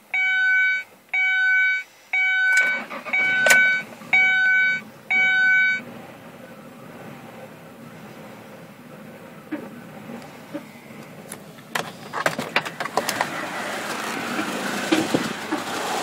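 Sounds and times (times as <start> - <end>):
dashboard warning chime: 0.1 - 5.8
car engine cranking and idling: 2.4 - 16.0.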